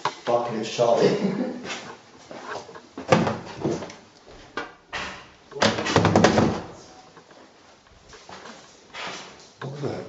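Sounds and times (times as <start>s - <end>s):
knocks and bangs: 4.9s - 6.8s.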